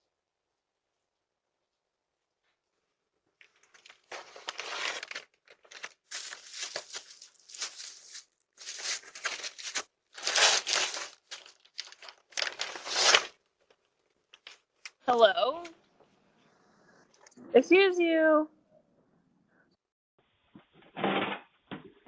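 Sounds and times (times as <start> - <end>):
rustling crinkling noise: 3.4 - 15.8.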